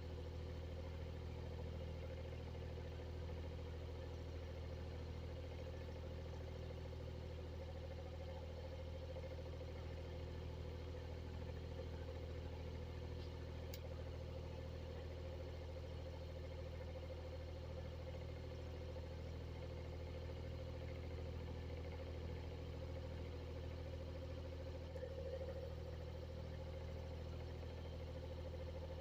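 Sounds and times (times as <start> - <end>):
exhaust fan humming: 1.4 - 22.1, 22.7 - 29.0
small tick: 13.2 - 13.9.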